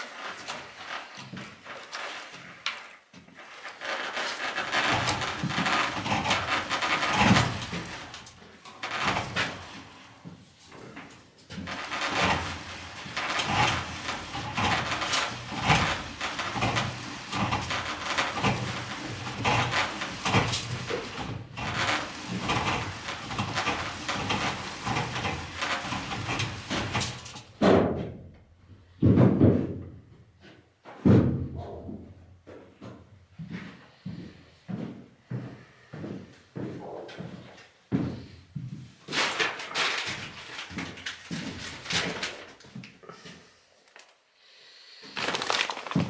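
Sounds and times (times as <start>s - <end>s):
electrical cables rustling and clattering: 0.0s - 10.0s, 10.7s - 27.6s, 39.1s - 43.0s, 45.0s - 46.0s.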